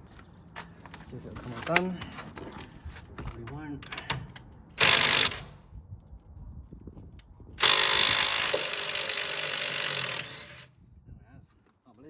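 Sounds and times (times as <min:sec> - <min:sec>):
impact wrench bursts: 0:04.8 - 0:05.6, 0:07.6 - 0:10.7.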